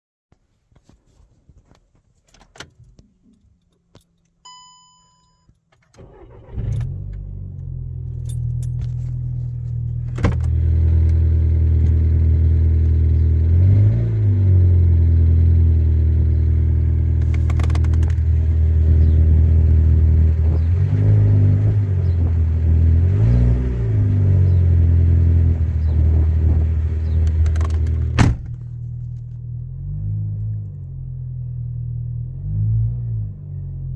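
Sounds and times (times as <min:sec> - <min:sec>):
dashboard chime: 0:04.5 - 0:05.5
keys jingling: 0:08.2 - 0:09.2.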